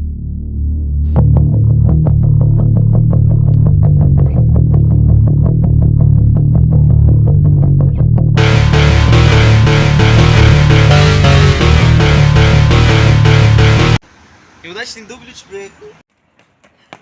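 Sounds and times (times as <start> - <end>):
heavy bass line: 0.0 - 14.0
distorted picked guitar: 1.2 - 14.0
low drone: 8.4 - 14.0
synthesizer: 8.4 - 14.0.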